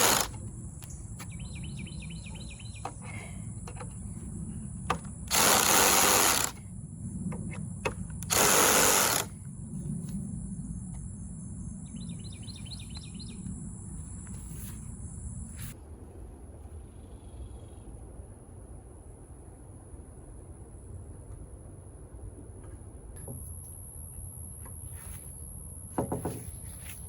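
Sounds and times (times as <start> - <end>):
power drill driving screws: 0.0 - 0.4, 5.3 - 6.6, 8.2 - 9.3
birds chirping: 0.0 - 4.0, 11.2 - 13.6.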